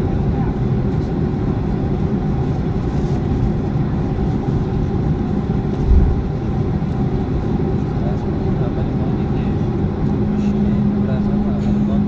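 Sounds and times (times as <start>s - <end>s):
aircraft cabin engine rumble: 0.0s - 12.0s
low thump: 5.9s - 6.2s.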